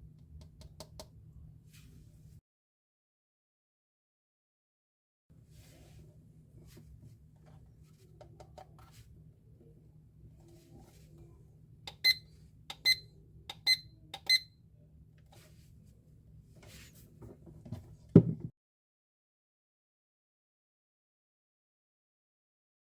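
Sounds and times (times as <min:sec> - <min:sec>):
alarm clock beeping: 0:11.9 - 0:14.5
short thump: 0:18.2 - 0:18.5.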